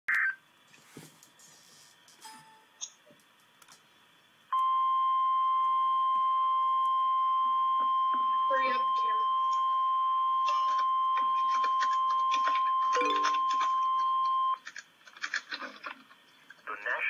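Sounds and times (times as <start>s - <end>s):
steady alarm beep: 4.6s - 14.6s.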